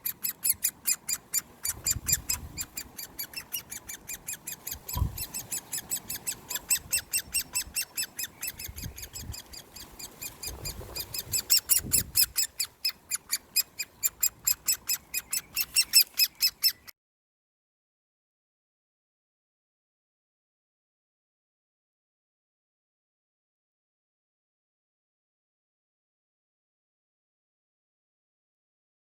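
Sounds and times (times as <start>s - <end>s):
woodpecker chick begging calls: 0.0s - 16.9s.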